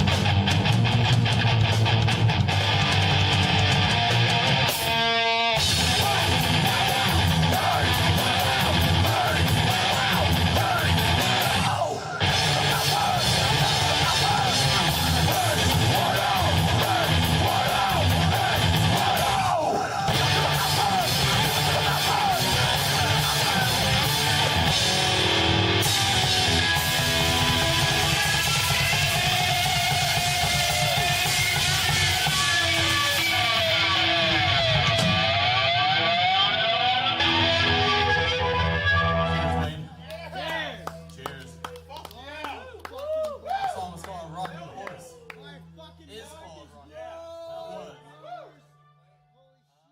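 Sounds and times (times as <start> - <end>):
live rock band playing: 0.0 - 39.8
electric guitar: 0.0 - 39.9.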